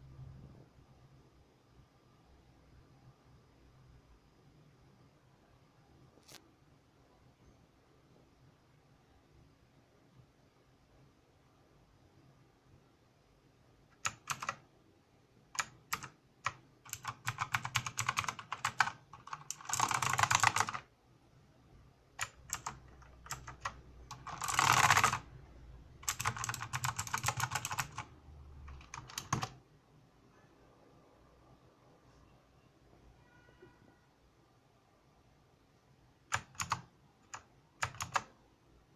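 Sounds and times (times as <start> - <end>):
mechanical keyboard typing: 13.9 - 14.6, 15.5 - 20.9, 22.2 - 25.3, 26.0 - 29.6, 36.3 - 38.3.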